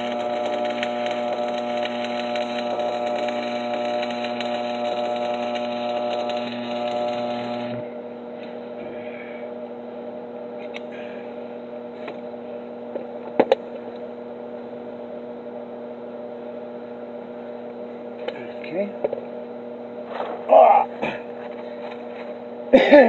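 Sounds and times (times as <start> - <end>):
welding arc crackling: 0.0 - 7.9, 20.0 - 22.4
arc welder hum: 0.0 - 23.0.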